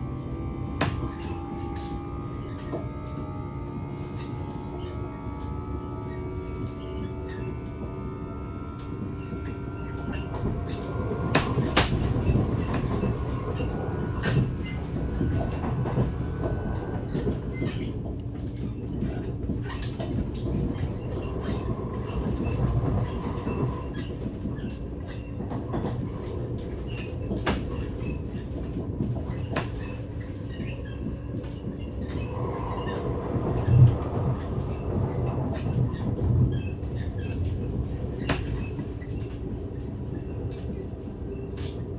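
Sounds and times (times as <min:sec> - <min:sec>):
electric train rumbling: 0:00.0 - 0:41.9.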